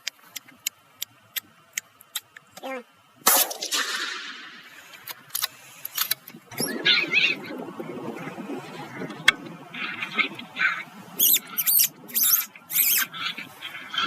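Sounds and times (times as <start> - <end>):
gunshot echo: 3.2 - 5.0
high-pitched animal squeal: 6.6 - 7.6, 9.8 - 14.0.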